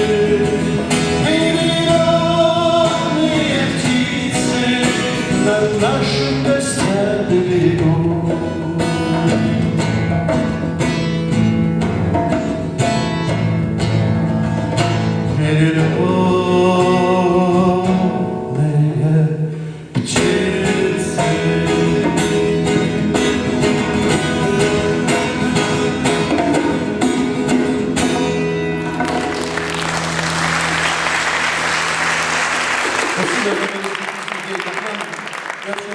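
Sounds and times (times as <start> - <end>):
man singing: 0.0 - 9.9, 15.2 - 26.4
strummed acoustic guitar: 0.0 - 33.3
audience applause: 29.0 - 35.9.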